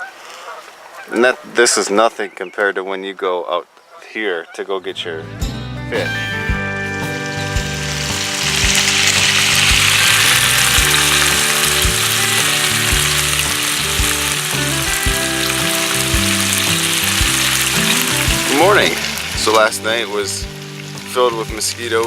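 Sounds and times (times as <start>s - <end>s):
background music with beat: 5.3s - 21.9s
food sizzling in frying pan: 6.8s - 22.0s.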